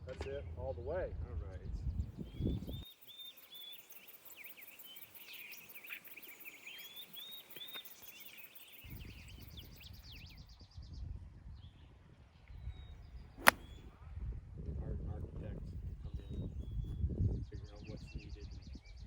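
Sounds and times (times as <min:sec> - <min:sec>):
wind rumble on microphone: 0:01.0 - 0:02.8, 0:08.8 - 0:19.0
songbirds chirping and trilling: 0:01.8 - 0:10.7
sharp knock: 0:13.4 - 0:13.6.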